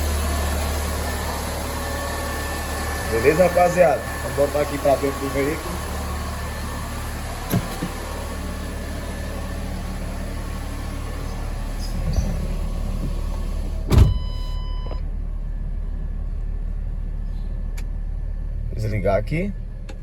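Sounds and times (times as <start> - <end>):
grinding compressor noise: 0.0 - 14.0
car engine idling: 0.0 - 20.0
car door shutting: 7.4 - 8.1, 11.2 - 15.0.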